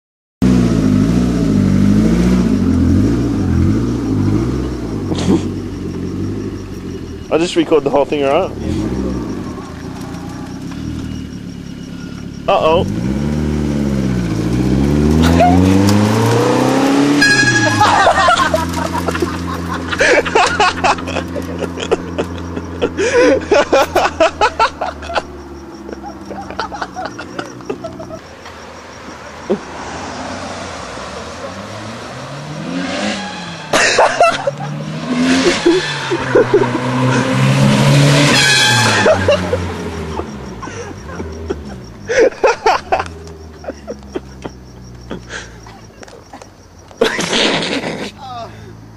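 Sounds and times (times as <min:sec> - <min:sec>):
car engine revving: 0:00.4 - 0:48.2
people laughing: 0:15.2 - 0:15.8, 0:17.4 - 0:28.3, 0:33.7 - 0:37.4, 0:38.8 - 0:48.6.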